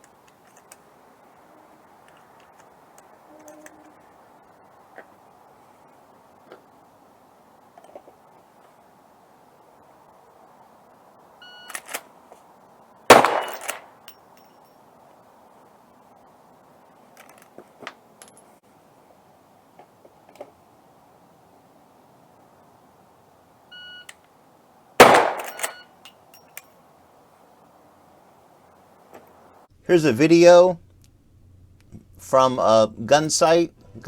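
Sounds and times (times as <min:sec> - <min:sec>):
faint clicks: 0:02.0 - 0:05.1, 0:24.0 - 0:24.4
rifle shots: 0:13.1 - 0:14.0, 0:25.0 - 0:25.9.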